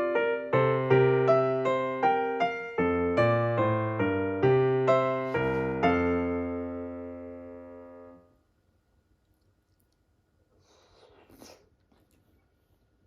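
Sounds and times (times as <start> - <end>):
piano music: 0.0 - 8.3.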